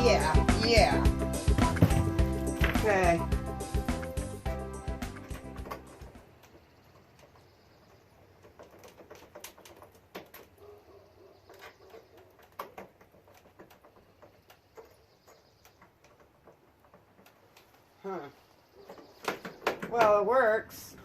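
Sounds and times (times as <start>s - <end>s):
music: 0.0s - 6.2s.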